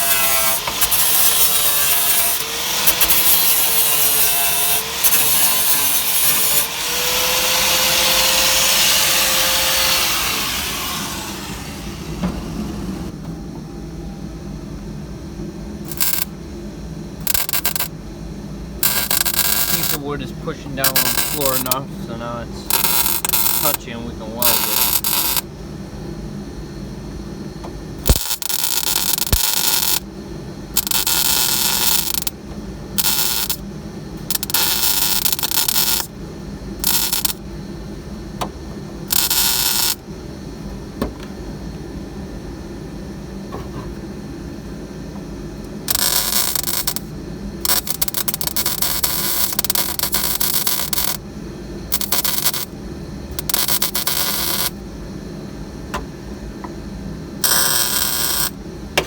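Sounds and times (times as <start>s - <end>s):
welding arc crackling: 0.0s - 6.7s, 15.9s - 16.3s, 17.2s - 17.9s, 18.8s - 25.4s, 28.0s - 30.0s, 30.8s - 32.3s, 33.0s - 33.6s, 34.2s - 36.1s, 36.8s - 37.4s, 39.1s - 40.0s, 45.9s - 47.1s, 47.7s - 51.2s, 51.9s - 52.7s, 53.3s - 54.8s, 57.4s - 58.6s.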